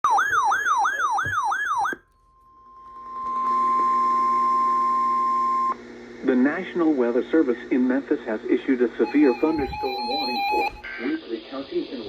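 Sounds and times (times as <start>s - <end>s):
warbling electronic siren: 0.0s - 5.8s, 9.0s - 10.8s
steady high alarm tone: 9.0s - 10.9s.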